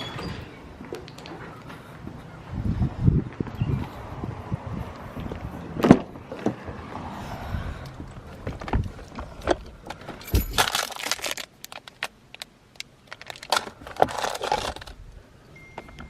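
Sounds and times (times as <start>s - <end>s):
keys jangling and rustling: 10.0s - 11.0s.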